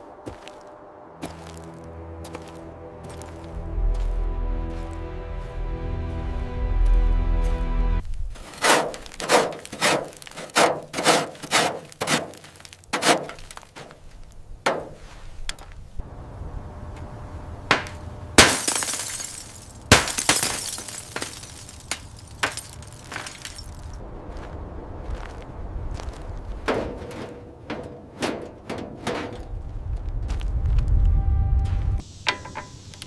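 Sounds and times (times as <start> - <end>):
sharp scraping strokes on metal: 8.4 - 13.5.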